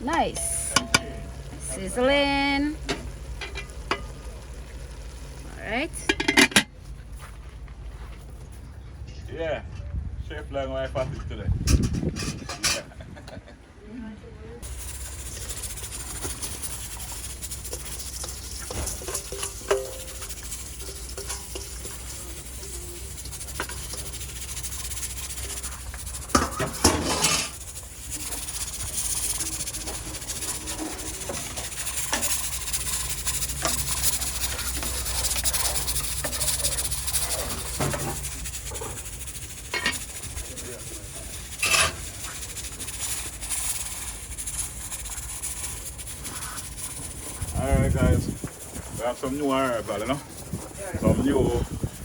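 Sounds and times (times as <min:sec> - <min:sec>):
meat sizzling in a pot: 0:00.0 - 0:06.6, 0:14.6 - 0:52.0
spoon stirring and scraping pot: 0:00.0 - 0:06.8, 0:14.6 - 0:52.0
utensil clattering on pot: 0:00.1 - 0:06.8, 0:11.7 - 0:12.9, 0:14.6 - 0:47.1.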